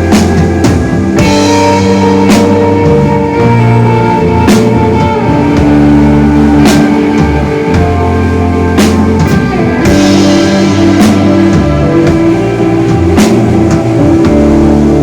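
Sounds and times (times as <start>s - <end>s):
rock band playing: 0.0s - 15.0s.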